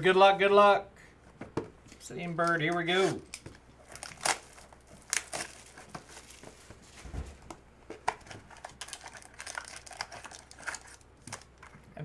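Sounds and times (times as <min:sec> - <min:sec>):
packaging crinkling and tearing: 0:02.4 - 0:07.1, 0:07.9 - 0:11.9.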